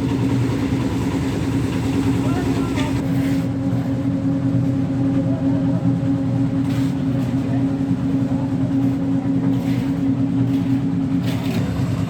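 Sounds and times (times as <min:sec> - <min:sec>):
engine-driven machine droning: 0:00.0 - 0:03.0, 0:10.5 - 0:12.0.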